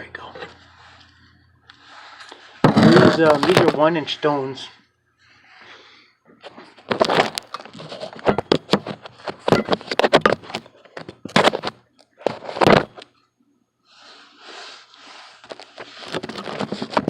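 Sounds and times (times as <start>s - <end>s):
metal parts knocking and clattering: 6.9s - 10.6s.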